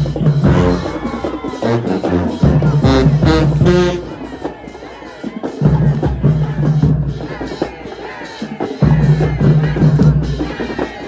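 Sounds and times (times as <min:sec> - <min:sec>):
drumline steady beat: 0:00.0 - 0:11.0
deep low brass notes: 0:01.6 - 0:04.2.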